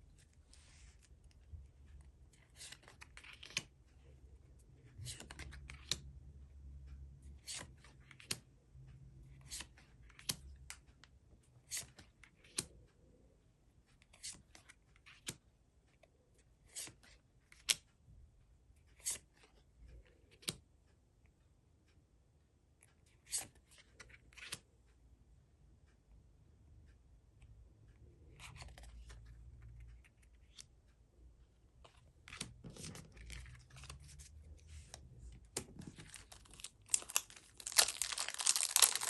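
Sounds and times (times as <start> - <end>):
trading cards swishing and rustling: 31.8 - 39.0.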